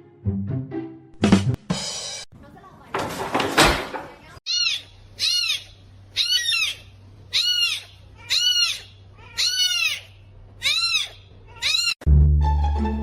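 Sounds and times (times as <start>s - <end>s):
kitten meowing: 4.5s - 12.0s.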